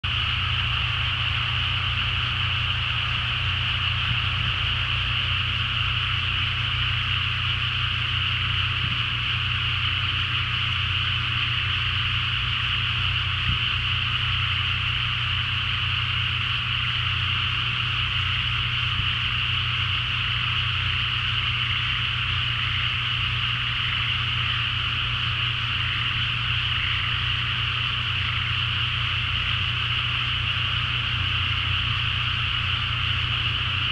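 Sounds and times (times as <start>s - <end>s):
low hum: 0.0s - 33.9s
frogs chorus calling: 20.9s - 33.0s.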